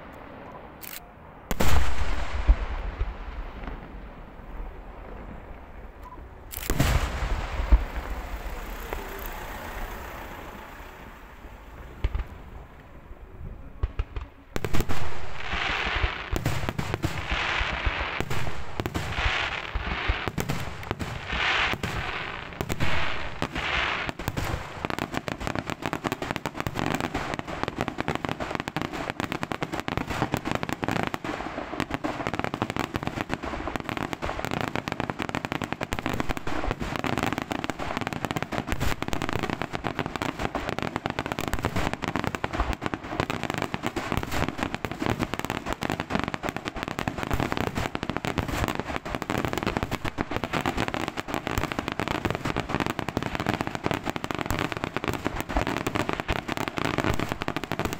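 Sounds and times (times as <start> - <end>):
fireworks crackling: 0.0 - 57.9
fireworks bangs: 1.4 - 57.9
fireworks hissing rushes: 6.5 - 13.0.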